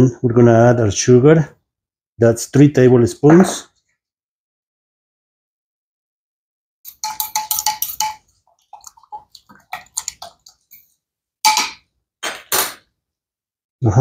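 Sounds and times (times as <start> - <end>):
spoon clinking against container: 6.9 - 11.8
spoon scraping: 6.9 - 11.8.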